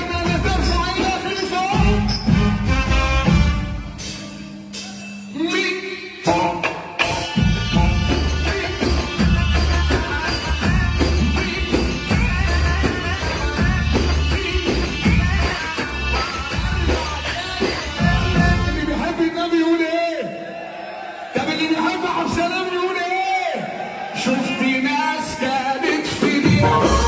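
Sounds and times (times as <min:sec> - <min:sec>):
man singing: 0:00.0 - 0:02.4, 0:05.3 - 0:20.1, 0:24.2 - 0:27.0
heavy bass beat: 0:01.8 - 0:03.7, 0:07.4 - 0:17.3, 0:26.5 - 0:27.0.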